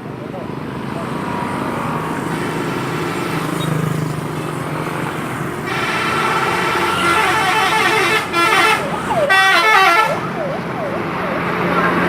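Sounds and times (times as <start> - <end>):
bus engine running: 0.0 - 12.0
musical air horn: 5.6 - 10.2.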